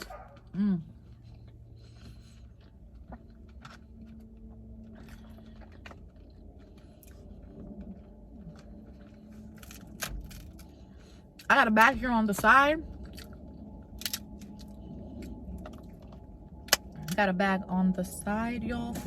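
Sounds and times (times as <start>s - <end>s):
person chewing: 0.0s - 11.5s, 12.9s - 17.2s
small clicks and crunches: 2.3s - 10.9s.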